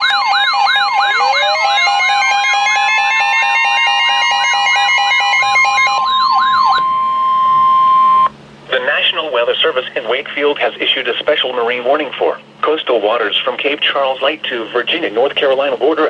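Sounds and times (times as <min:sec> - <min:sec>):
slowly rising siren tone: 0:00.0 - 0:08.4
two-tone hi-lo siren: 0:00.0 - 0:08.4
steady alert tone: 0:00.0 - 0:08.9
wailing electronic siren: 0:00.0 - 0:09.0.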